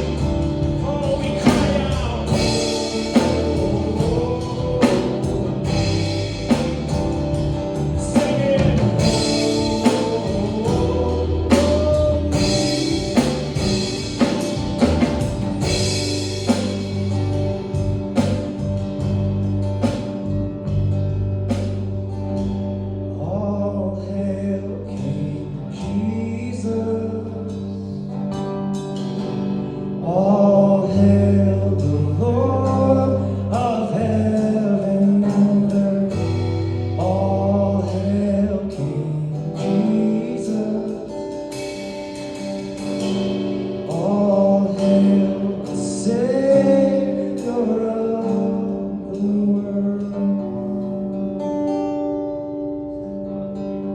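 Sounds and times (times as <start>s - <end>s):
person singing: 0.0s - 19.1s, 29.9s - 51.2s
steady drum beat: 0.0s - 22.1s, 41.3s - 47.7s
live band playing gospel song: 0.0s - 51.4s.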